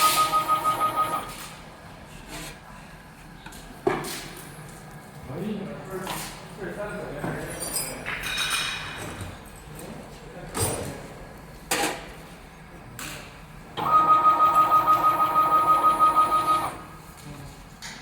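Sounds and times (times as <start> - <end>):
machine motor whine: 13.8 - 17.0.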